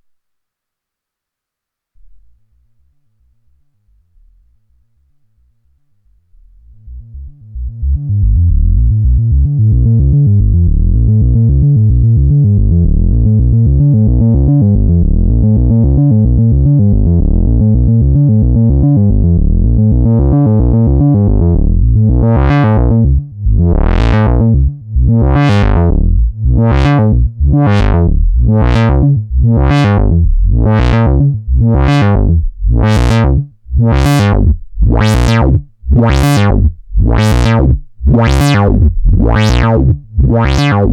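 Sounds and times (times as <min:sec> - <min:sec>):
pulsing synthesizer drone: 0:06.3 - 0:40.9
synthesizer filter sweeps: 0:12.8 - 0:40.9.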